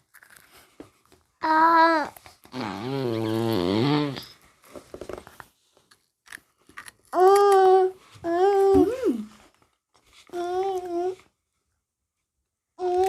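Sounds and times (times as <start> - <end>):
faint crinkles and clicks: 0.0 - 1.3.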